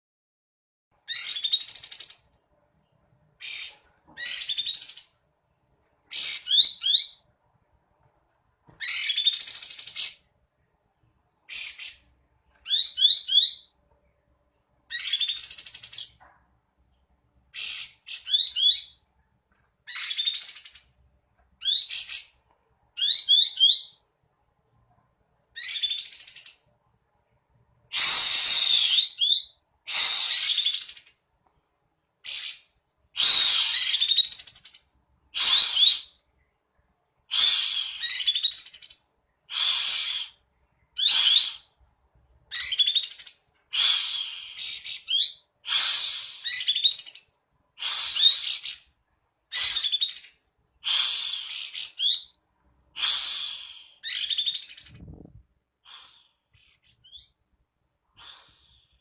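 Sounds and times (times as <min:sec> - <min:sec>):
bird singing whistled phrases: 0:12.7 - 0:13.7, 0:28.0 - 0:31.2, 0:49.5 - 0:52.4, 0:53.0 - 0:55.2, 0:56.6 - 0:57.4.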